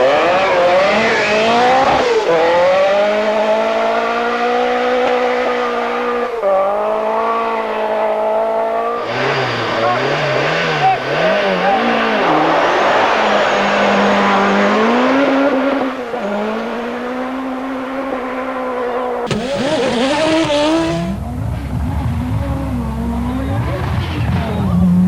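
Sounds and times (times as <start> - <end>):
rally car engine revving: 13.5 - 21.2
car accelerating: 19.3 - 21.2.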